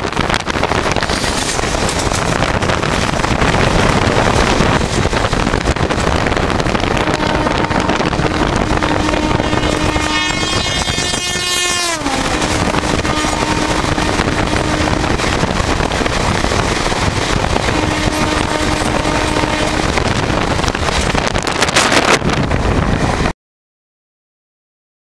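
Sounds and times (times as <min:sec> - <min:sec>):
train wind and rail noise: 0:00.0 - 0:23.4
passing locomotive horn blaring: 0:06.9 - 0:15.5, 0:17.5 - 0:20.5
locomotive horn blasts: 0:07.0 - 0:15.3, 0:17.6 - 0:20.0.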